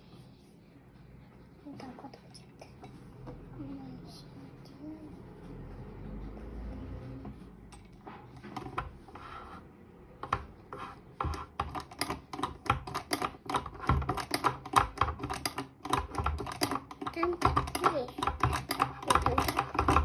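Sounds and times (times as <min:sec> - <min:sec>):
toy sewing machine clicking: 0:11.6 - 0:20.0.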